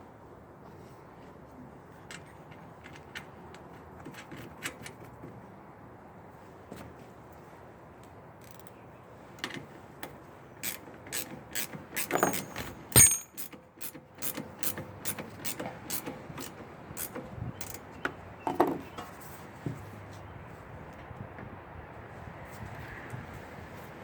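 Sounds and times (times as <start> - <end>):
metal ratchet clicks: 10.6 - 17.8.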